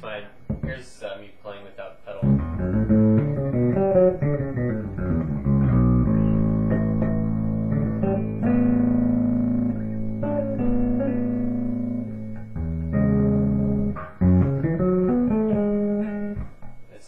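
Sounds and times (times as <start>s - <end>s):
electric bass notes: 0.4s - 0.9s, 2.1s - 16.9s.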